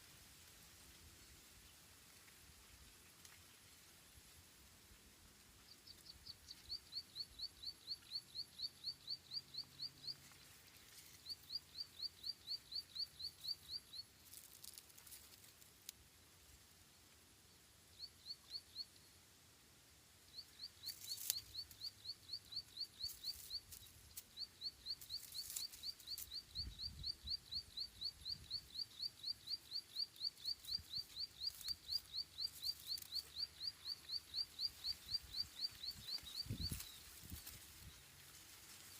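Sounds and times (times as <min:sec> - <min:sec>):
small bird chirping: 0:05.5 - 0:15.9, 0:17.9 - 0:19.2, 0:20.2 - 0:38.9
rustling: 0:14.2 - 0:15.9, 0:25.0 - 0:26.3, 0:34.5 - 0:38.9.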